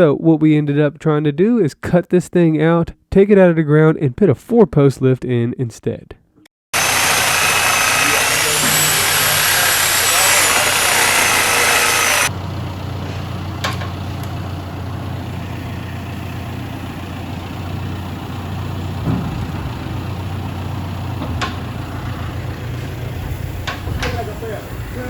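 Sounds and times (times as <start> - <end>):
engine idling: 6.8 - 25.0
loud hiss with whistling tones: 7.1 - 12.3.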